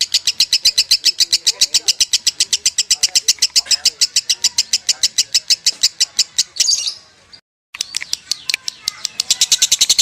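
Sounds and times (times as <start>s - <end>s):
lovebird chirping trill: 0.0s - 10.0s.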